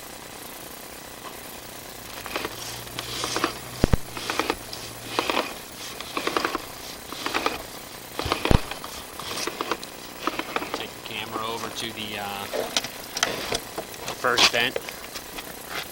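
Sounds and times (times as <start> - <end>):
cable rattling and scraping in drain: 2.1 - 3.6, 4.2 - 11.7, 12.4 - 15.9.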